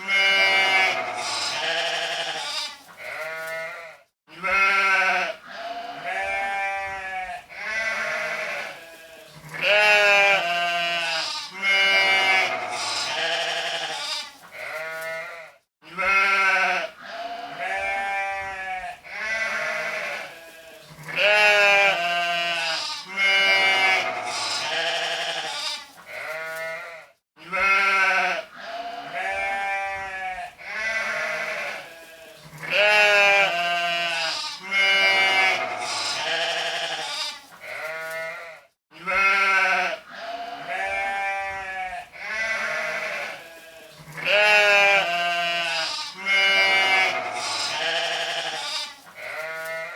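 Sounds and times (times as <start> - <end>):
sheep bleating: 0.0 - 49.9.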